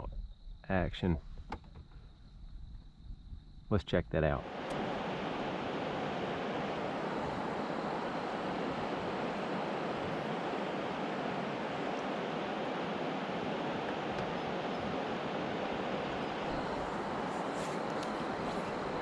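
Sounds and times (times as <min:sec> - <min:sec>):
water rushing past boat: 0:04.4 - 0:19.0
wind rushing: 0:04.4 - 0:19.0.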